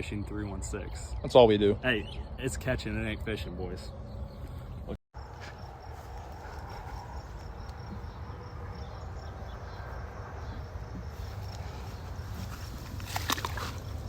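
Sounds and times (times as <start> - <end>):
cricket chirping: 5.2 - 14.0.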